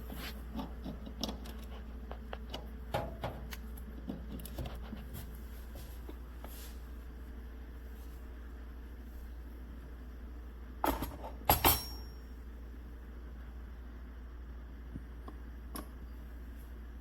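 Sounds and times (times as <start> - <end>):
steady low hum: 0.0 - 17.0
clicks and knocks of objects handled: 0.1 - 5.3.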